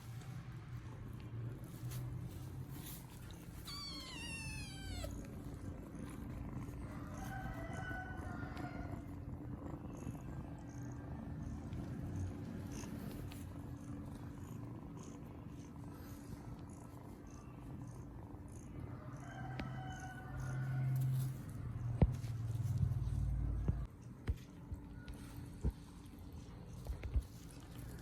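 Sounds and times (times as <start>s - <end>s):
low purring: 3.2s - 20.2s
kittens mewing: 3.3s - 9.1s.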